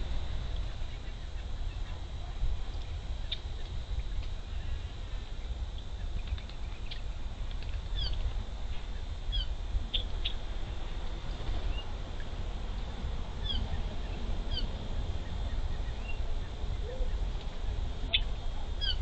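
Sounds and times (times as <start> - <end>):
steady low rumble: 0.0 - 19.0
bird whistling: 13.4 - 13.7.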